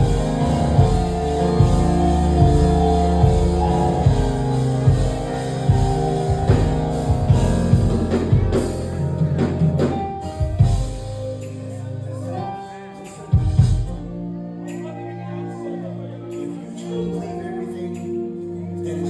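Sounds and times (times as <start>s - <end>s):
drum kit beat: 0.0s - 11.5s
electric guitar: 0.0s - 12.6s
sustained keyboard chords: 0.0s - 19.0s.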